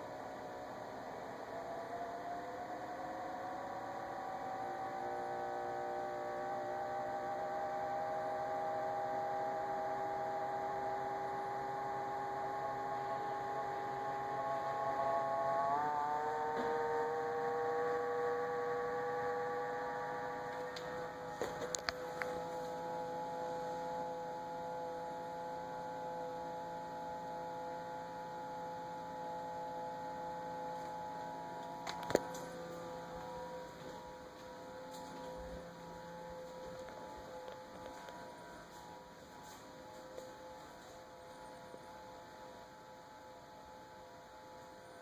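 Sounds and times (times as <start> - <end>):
refrigerator whining hum: 0.0 - 45.0.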